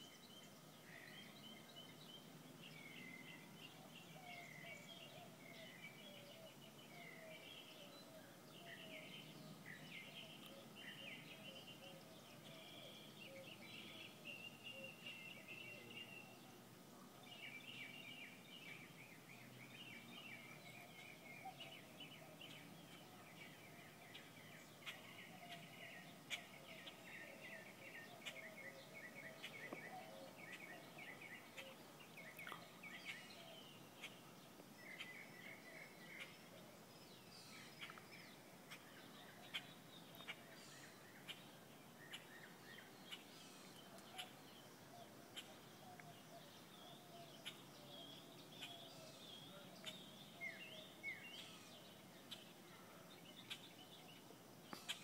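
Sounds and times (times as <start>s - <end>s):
birds chirping: 17.2s - 55.0s.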